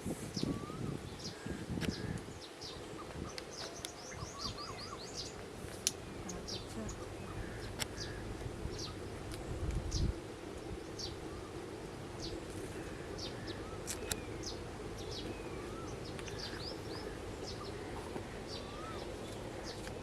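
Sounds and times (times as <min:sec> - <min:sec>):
steady low background hum: 0:00.0 - 0:20.0
low whistled bird notes: 0:00.2 - 0:05.4
birds chirping: 0:00.3 - 0:20.0.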